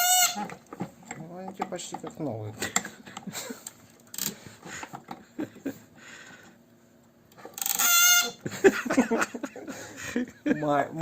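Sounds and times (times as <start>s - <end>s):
loud metal squeak: 0.0s - 0.5s, 7.6s - 8.4s
metal parts scraping and clicking: 3.6s - 5.1s, 7.3s - 8.2s.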